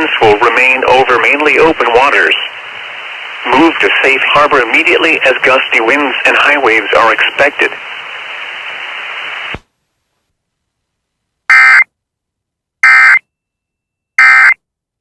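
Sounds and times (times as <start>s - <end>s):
radio hiss: 0.0s - 9.6s
screeching data bursts: 11.5s - 11.8s, 12.8s - 13.2s.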